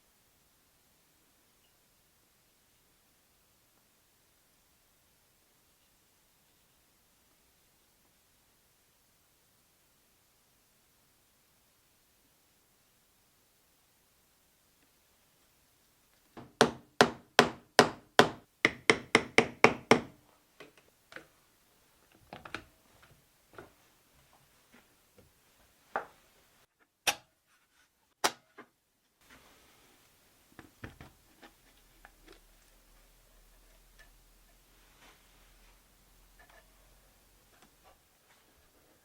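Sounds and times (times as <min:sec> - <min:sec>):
hammer striking wood: 0:16.4 - 0:20.2.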